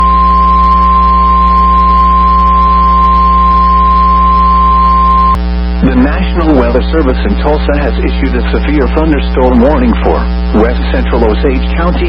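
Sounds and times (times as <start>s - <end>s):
steady high alarm tone: 0.0s - 5.4s
steady low hum: 0.0s - 12.0s.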